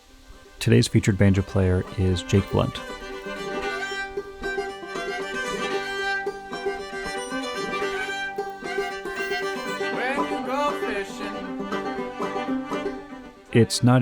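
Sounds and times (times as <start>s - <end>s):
banjo playing: 0.0s - 14.0s
fiddle playing: 0.0s - 14.0s.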